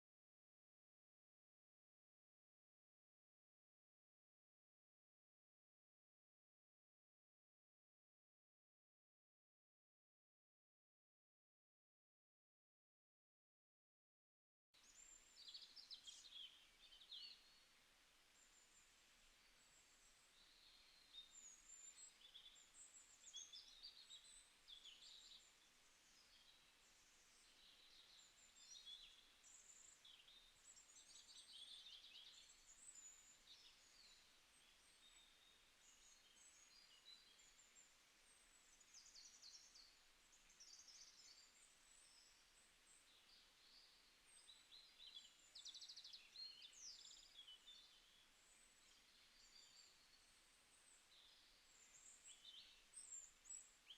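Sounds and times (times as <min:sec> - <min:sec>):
songbirds chirping and trilling: 0:14.8 - 0:53.9.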